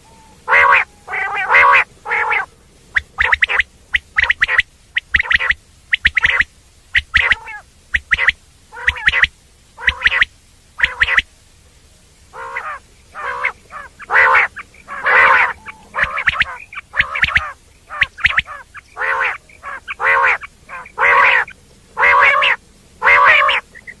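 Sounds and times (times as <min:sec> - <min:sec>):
quail calling: 0:00.0 - 0:11.3, 0:12.3 - 0:24.0
thin sharp bird notes: 0:12.5 - 0:21.6.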